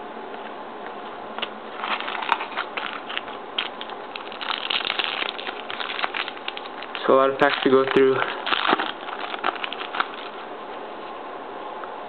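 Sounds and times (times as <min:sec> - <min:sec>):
card wrapper crackling and rustling: 0:01.4 - 0:10.5.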